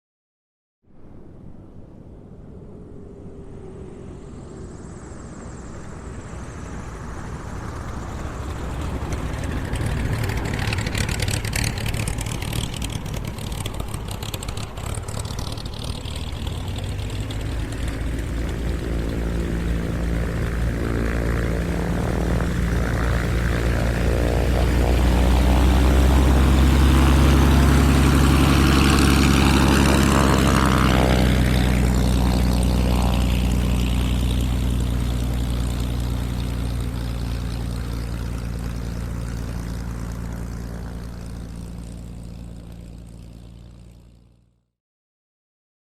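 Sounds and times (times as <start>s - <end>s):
car engine and road noise: 0.9s - 44.3s
low engine hum: 0.9s - 44.5s.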